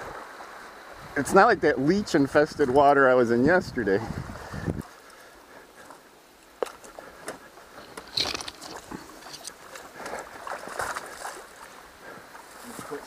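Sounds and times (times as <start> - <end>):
footsteps wading through water: 4.2 - 13.0
water splashing: 6.6 - 13.0.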